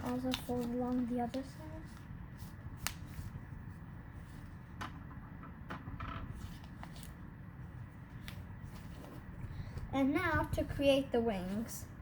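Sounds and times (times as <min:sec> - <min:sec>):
paper being folded and creased: 0:00.0 - 0:04.7, 0:06.3 - 0:07.3, 0:08.0 - 0:09.8
steady low hum: 0:00.0 - 0:12.0.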